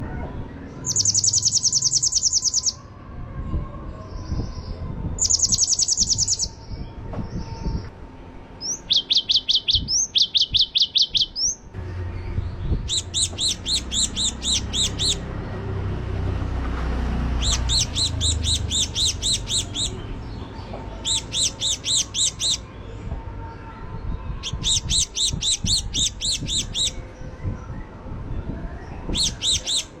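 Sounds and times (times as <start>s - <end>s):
bird high-pitched call bursts: 0.8s - 2.8s, 5.2s - 6.6s, 8.6s - 11.6s, 12.8s - 15.2s, 17.4s - 20.0s, 21.0s - 22.7s, 24.4s - 27.0s, 29.1s - 30.0s
low rumble: 11.7s - 21.6s.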